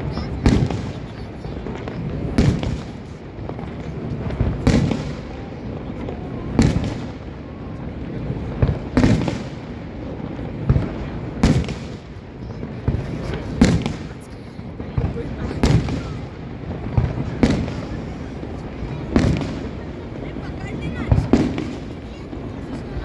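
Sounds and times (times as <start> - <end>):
fireworks bangs: 0.0 - 23.0.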